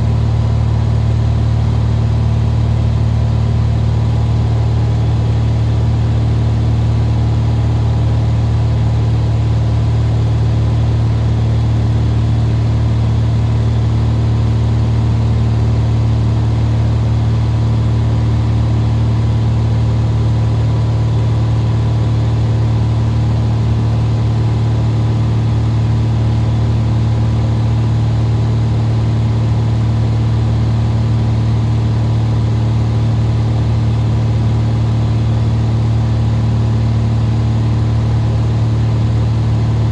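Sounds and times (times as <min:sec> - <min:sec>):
propeller plane engine drone: 0:00.0 - 0:39.9.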